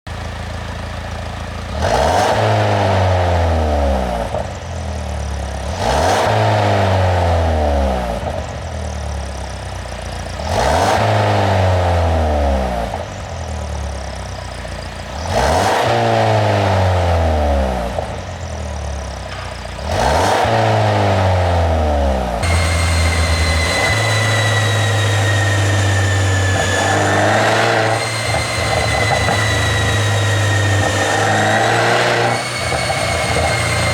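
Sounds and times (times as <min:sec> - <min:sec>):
engine idling with faint whine: 0:00.1 - 0:01.8, 0:04.2 - 0:05.7, 0:08.1 - 0:10.4, 0:12.8 - 0:15.3, 0:17.8 - 0:19.8, 0:22.4 - 0:33.9
car engine revving: 0:01.7 - 0:04.8, 0:05.5 - 0:09.5, 0:10.3 - 0:13.4, 0:14.0 - 0:33.9.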